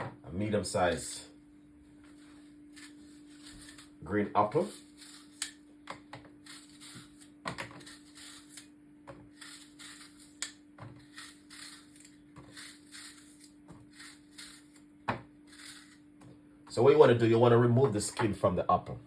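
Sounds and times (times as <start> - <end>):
steady low hum: 0.0 - 19.0
knife scraping apple skin: 2.1 - 5.6, 6.4 - 16.1.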